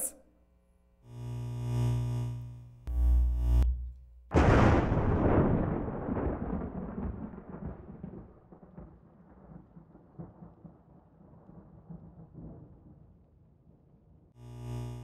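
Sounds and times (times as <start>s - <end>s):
thunder rumbling: 4.3s - 13.0s.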